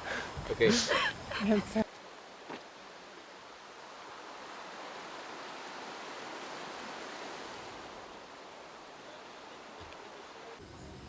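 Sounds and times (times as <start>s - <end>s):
river water rushing: 1.8s - 10.6s.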